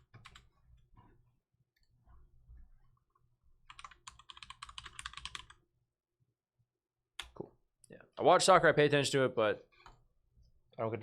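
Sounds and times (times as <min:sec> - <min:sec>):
fast typing on keyboard: 0:00.2 - 0:00.5, 0:03.7 - 0:05.6.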